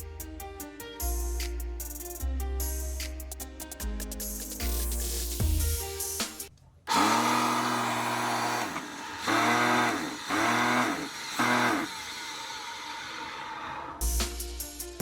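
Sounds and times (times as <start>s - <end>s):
vacuum cleaner motor: 6.9s - 14.0s.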